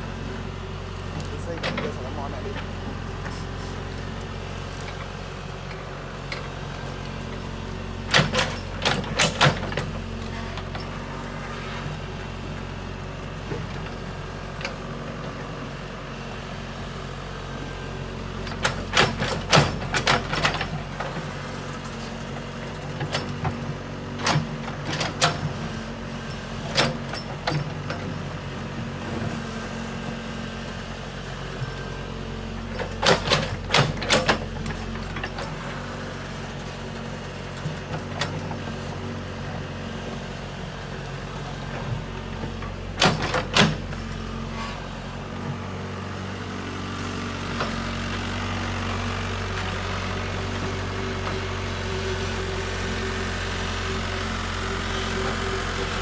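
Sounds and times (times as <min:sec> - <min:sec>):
excavator diesel engine running: 0:00.0 - 0:56.0
machine knocks and clanks: 0:08.1 - 0:10.0, 0:18.4 - 0:21.5, 0:22.7 - 0:25.7, 0:32.6 - 0:35.6, 0:41.9 - 0:44.2.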